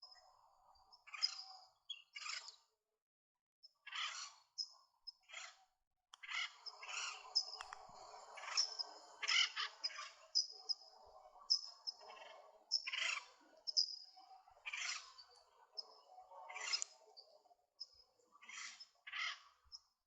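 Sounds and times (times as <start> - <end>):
faint forest hum: 3.8 - 5.5, 6.2 - 19.8
scratchy bird calls: 3.9 - 4.5, 6.2 - 10.8, 11.5 - 13.9, 14.6 - 15.3, 16.5 - 16.9, 18.4 - 19.6
high thin birdsong: 6.2 - 19.9.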